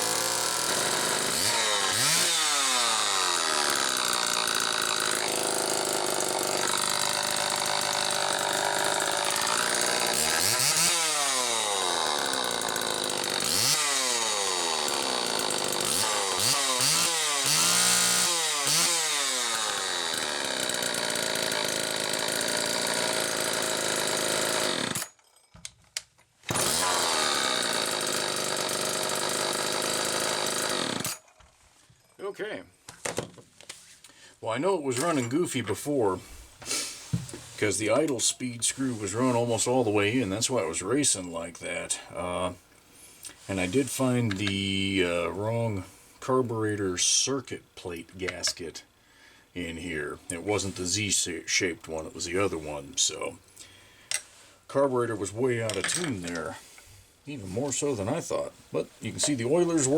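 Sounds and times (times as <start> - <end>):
chainsaw revving and idling: 0.0 - 25.2, 26.5 - 31.2, 36.1 - 47.1, 55.8 - 59.9.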